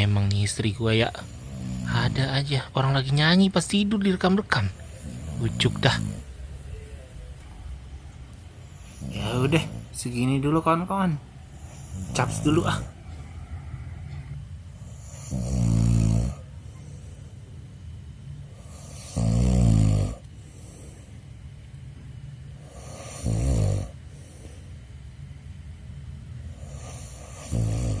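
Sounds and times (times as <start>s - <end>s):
man snoring loudly: 1.0s - 2.4s, 4.7s - 6.3s, 8.7s - 10.0s, 11.4s - 13.3s, 14.8s - 16.5s, 18.5s - 20.2s, 22.6s - 24.0s, 26.5s - 28.0s
quiet breathing: 1.1s - 2.7s, 4.6s - 10.0s, 11.1s - 19.4s, 20.1s - 28.0s.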